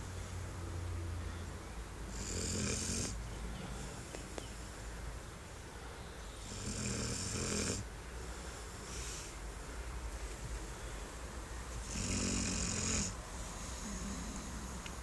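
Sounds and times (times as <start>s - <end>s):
puppy snoring: 2.1s - 3.2s, 6.4s - 7.9s, 11.8s - 14.9s.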